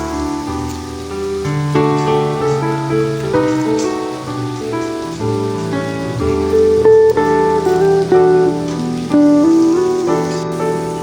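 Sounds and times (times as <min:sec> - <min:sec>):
gentle instrumental music: 0:00.0 - 0:11.0
rain pattering: 0:00.0 - 0:11.0.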